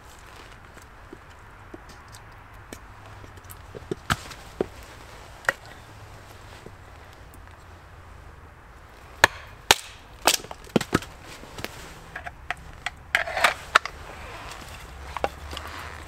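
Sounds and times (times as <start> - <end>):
wood cracking and knocking: 9.2 - 11.7.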